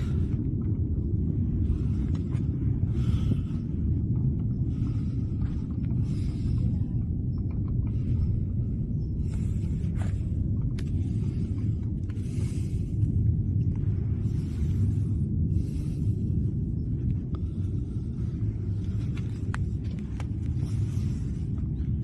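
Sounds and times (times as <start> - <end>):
low rumble: 0.0 - 22.0
faint clicks and knocks: 6.6 - 8.3.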